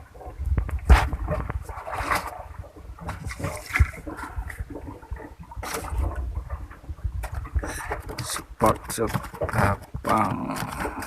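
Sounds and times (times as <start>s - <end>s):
water splashing and sloshing: 0.0s - 11.0s
steady low rumble: 2.5s - 8.1s.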